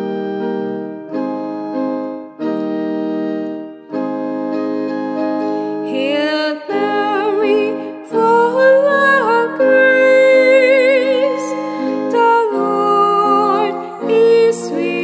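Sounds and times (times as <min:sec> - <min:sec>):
electronic keyboard chords: 0:00.0 - 0:15.0
person singing with vibrato: 0:05.8 - 0:15.0.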